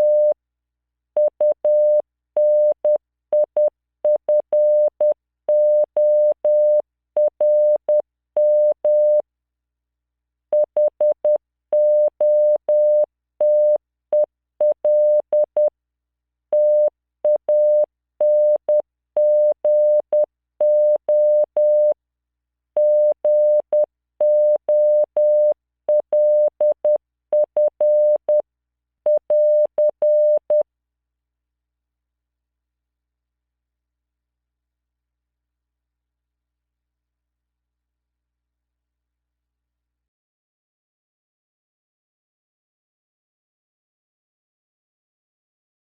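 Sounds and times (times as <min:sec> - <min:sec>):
morse code beeps: 0:00.0 - 0:00.3, 0:22.8 - 0:28.4, 0:29.1 - 0:30.6.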